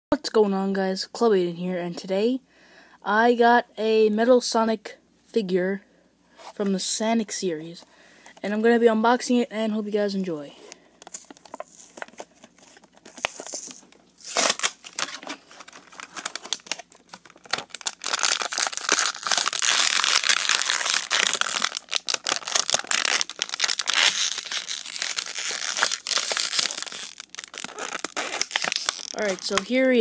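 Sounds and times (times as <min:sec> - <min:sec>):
packaging tearing and crinkling: 0:11.1 - 0:30.0.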